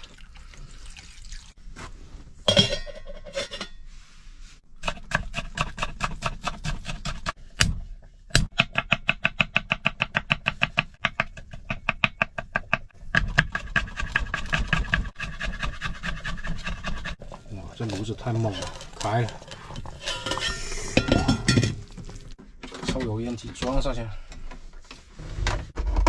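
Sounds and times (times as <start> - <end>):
kitchenware clattering: 2.5 - 3.8, 17.2 - 23.1.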